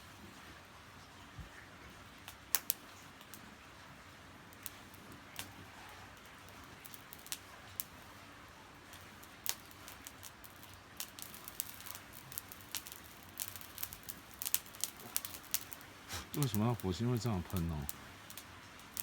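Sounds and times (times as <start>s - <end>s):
fire crackling and popping: 1.8s - 19.0s
fire hissing: 4.5s - 19.0s.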